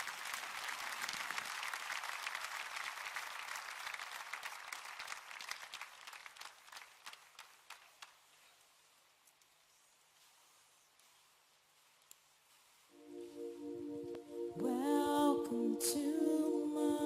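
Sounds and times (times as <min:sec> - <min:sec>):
congregation applauding: 0:00.0 - 0:08.3.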